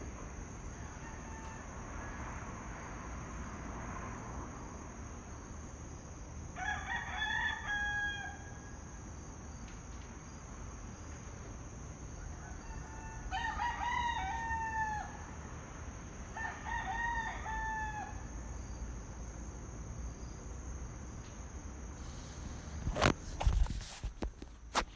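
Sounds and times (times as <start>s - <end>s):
roosters crowing: 0.8s - 2.4s, 6.6s - 8.8s, 12.1s - 15.6s, 16.2s - 18.8s.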